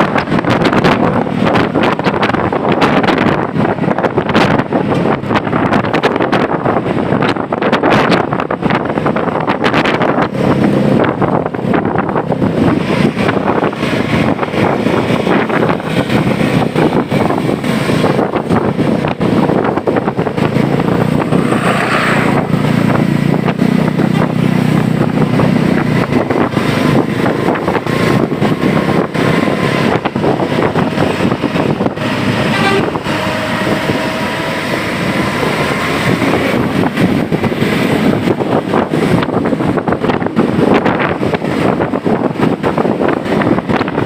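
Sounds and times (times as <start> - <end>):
bus engine and road noise: 0.0 - 44.0
heavy rain: 12.2 - 20.2
short higher tone: 32.4 - 33.6.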